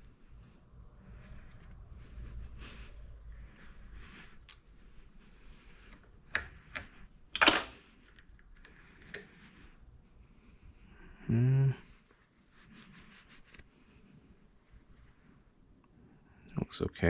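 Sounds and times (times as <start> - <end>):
metal tools clinking: 6.3 - 8.0.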